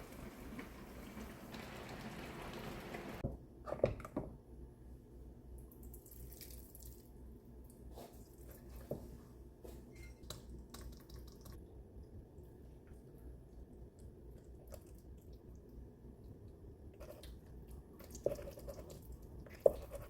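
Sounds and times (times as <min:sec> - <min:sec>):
water dripping and splashing: 0:00.0 - 0:03.2.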